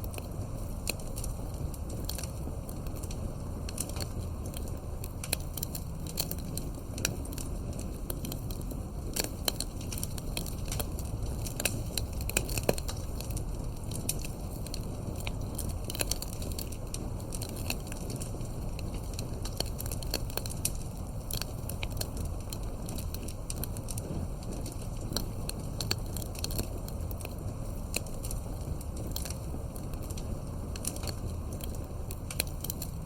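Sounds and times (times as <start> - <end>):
fireplace crackling: 0.0 - 33.0.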